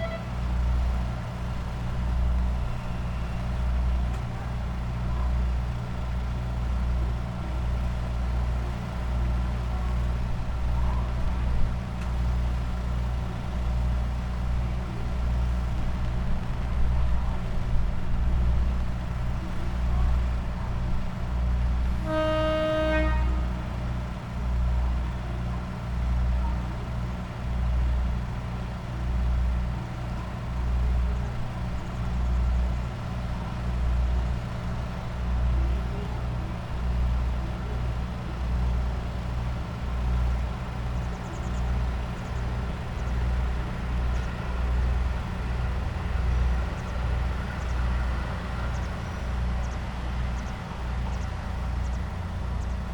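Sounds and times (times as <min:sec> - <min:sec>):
train horn toot: 0:00.0 - 0:00.5, 0:21.8 - 0:24.2
diesel train engine idling: 0:00.0 - 0:52.9.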